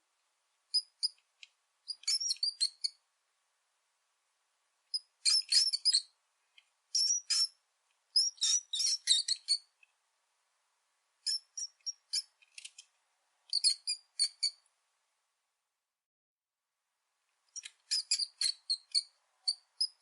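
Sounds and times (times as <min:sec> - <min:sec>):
rat squeaking: 0:00.7 - 0:01.2, 0:01.9 - 0:03.0, 0:04.9 - 0:06.2, 0:06.9 - 0:09.7, 0:11.2 - 0:12.8, 0:13.5 - 0:14.6, 0:17.5 - 0:20.0.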